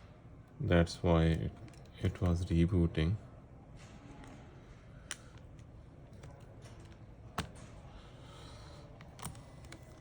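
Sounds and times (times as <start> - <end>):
low steady hum: 0.0 - 10.0.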